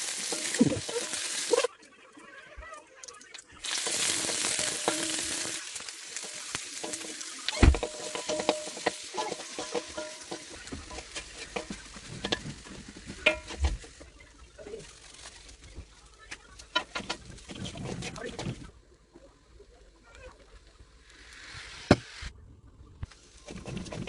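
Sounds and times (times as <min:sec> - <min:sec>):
spatula scraping a pan: 0:00.0 - 0:01.7, 0:03.6 - 0:14.2, 0:16.7 - 0:18.6, 0:23.3 - 0:24.0
rice sizzling in a pan: 0:00.0 - 0:01.8, 0:03.6 - 0:18.7, 0:19.4 - 0:22.3, 0:23.1 - 0:24.0.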